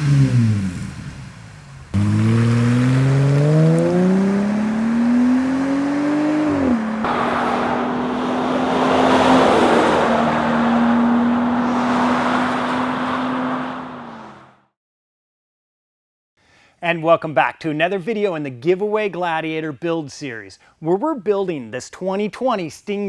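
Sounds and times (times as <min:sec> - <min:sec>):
engine revving through exhaust: 0:00.0 - 0:14.6.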